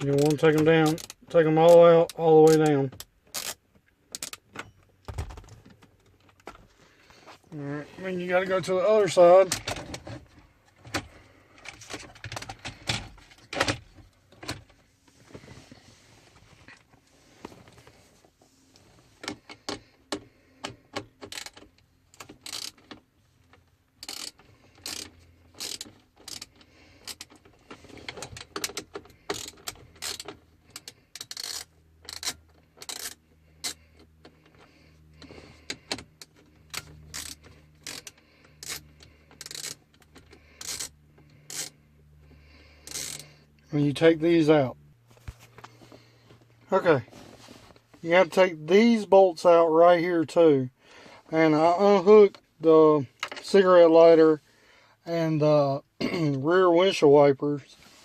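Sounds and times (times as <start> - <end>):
metal and plastic clatters: 9.4 - 14.8, 24.0 - 34.5
socket ratchet clicking: 19.3 - 23.0, 24.0 - 27.4, 28.1 - 33.8, 35.8 - 41.8, 42.8 - 43.3.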